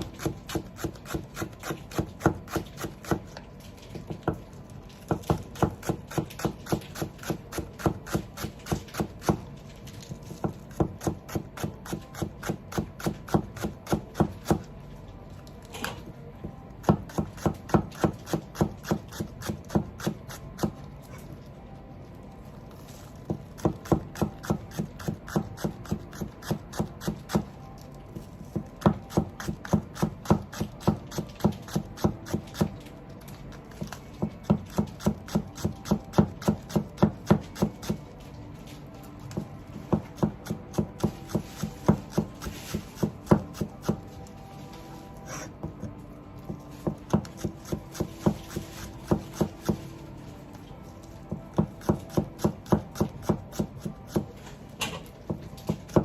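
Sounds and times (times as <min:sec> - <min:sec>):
knife chopping on cutting board: 0:00.0 - 0:03.3, 0:05.1 - 0:09.4, 0:10.4 - 0:14.7, 0:16.8 - 0:20.8, 0:23.3 - 0:27.5, 0:28.5 - 0:32.8, 0:39.3 - 0:44.0, 0:46.5 - 0:49.8, 0:51.3 - 0:56.0.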